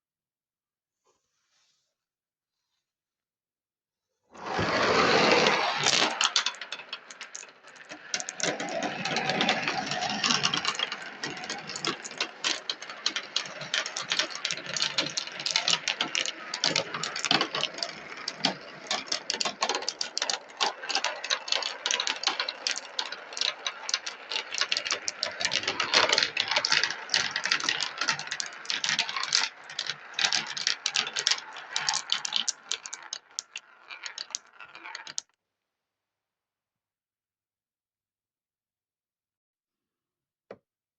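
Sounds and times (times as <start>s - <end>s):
marbles clattering down a track: 4.4s - 35.4s.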